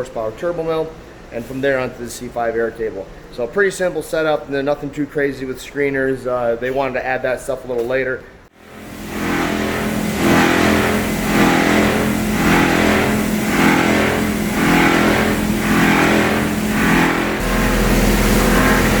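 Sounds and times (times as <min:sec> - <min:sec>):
machinery humming: 0:08.6 - 0:19.0
rhythmic whooshing: 0:08.6 - 0:19.0
deep low rumble: 0:08.8 - 0:19.0.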